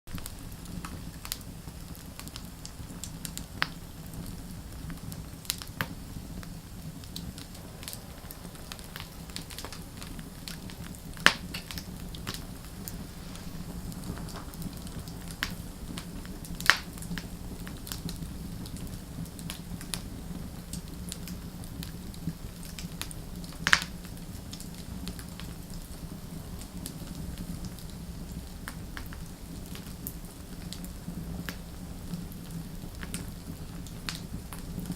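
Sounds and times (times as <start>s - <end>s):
burning wood popping: 0.1s - 28.0s
wood fire crackling: 0.1s - 34.9s.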